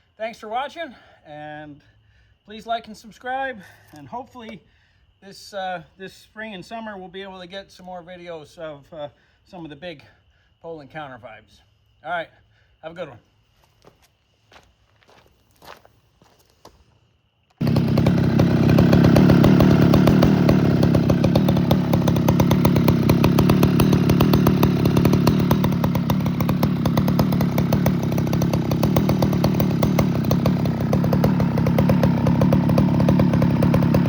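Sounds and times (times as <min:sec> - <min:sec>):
chainsaw engine running: 0:17.6 - 0:34.0.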